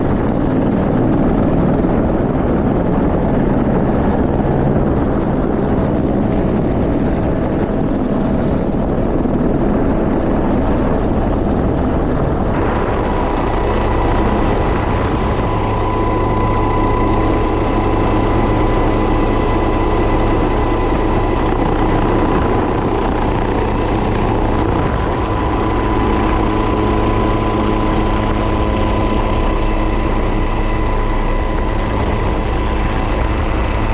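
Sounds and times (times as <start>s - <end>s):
helicopter rotor rumble: 0.0s - 33.9s
high turbine whine: 12.4s - 33.9s.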